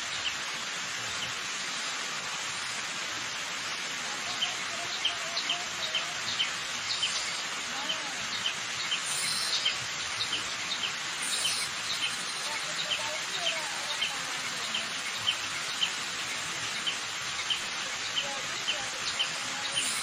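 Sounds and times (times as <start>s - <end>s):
waterfall rushing: 0.0s - 20.0s
other bird calls: 4.4s - 20.0s.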